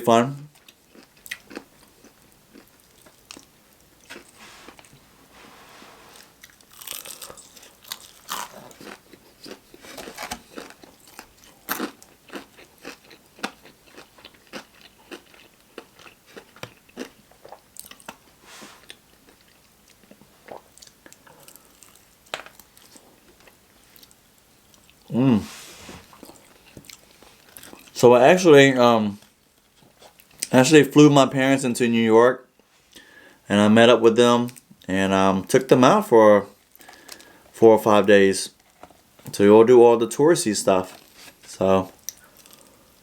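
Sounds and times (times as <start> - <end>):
crunching and chewing fried chicken: 0.4 - 5.0, 6.2 - 25.1, 26.1 - 28.0, 36.6 - 37.5, 40.8 - 43.0.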